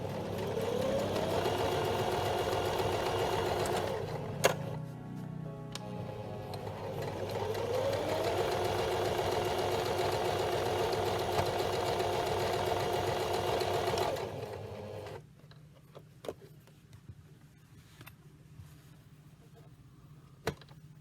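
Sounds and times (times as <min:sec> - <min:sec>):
sewing machine running: 0:00.0 - 0:04.8, 0:06.0 - 0:15.2.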